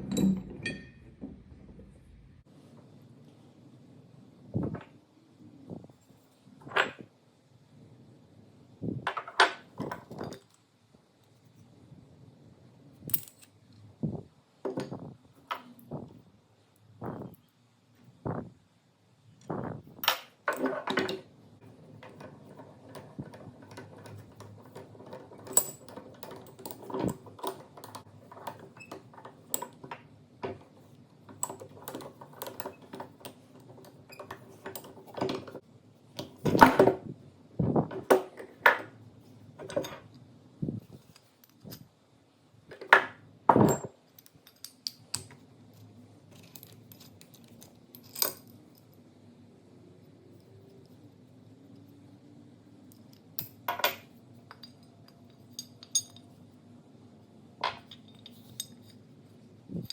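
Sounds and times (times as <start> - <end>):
metal tools clinking and knocking: 0.0 - 1.3, 22.0 - 29.9, 46.3 - 48.9, 52.9 - 56.4, 57.6 - 59.0
low steady shop hum: 0.0 - 59.9.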